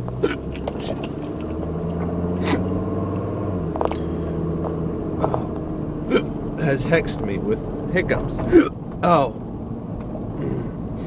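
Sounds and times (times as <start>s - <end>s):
vehicle engine humming: 0.0s - 11.0s
man hiccuping: 0.2s - 0.5s, 2.4s - 2.8s, 5.2s - 6.4s, 8.4s - 8.8s, 10.4s - 10.8s.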